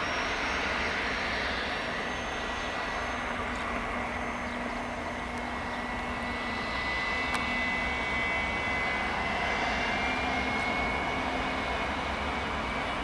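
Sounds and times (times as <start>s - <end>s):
jet engine whine: 0.0s - 13.0s
rush of engine noise: 0.0s - 13.0s.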